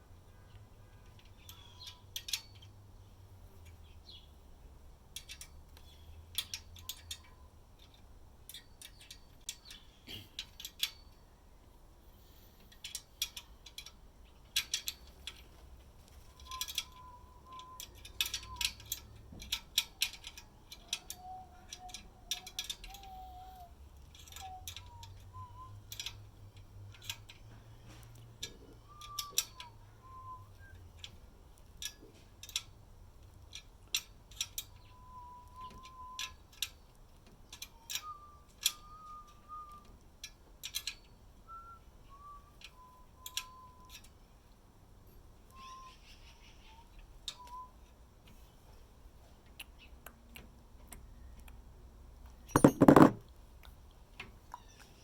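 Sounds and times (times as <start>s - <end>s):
clicks and clatters of hand tools: 5.1s - 11.1s, 24.0s - 26.2s, 52.6s - 54.4s.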